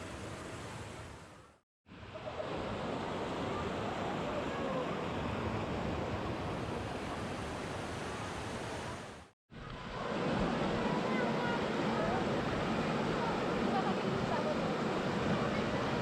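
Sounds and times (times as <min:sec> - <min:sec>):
faint voices: 0:02.2 - 0:05.4, 0:10.1 - 0:16.0
waterfall rushing: 0:09.8 - 0:16.0.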